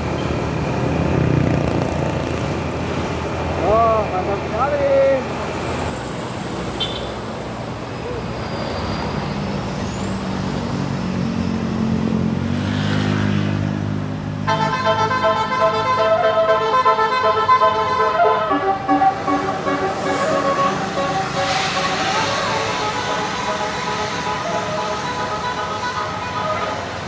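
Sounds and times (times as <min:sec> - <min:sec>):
bus engine running: 0:00.0 - 0:12.7, 0:13.7 - 0:27.0
road noise: 0:00.0 - 0:27.0
many-toned pulsing bus horn: 0:06.8 - 0:07.2, 0:14.4 - 0:27.0.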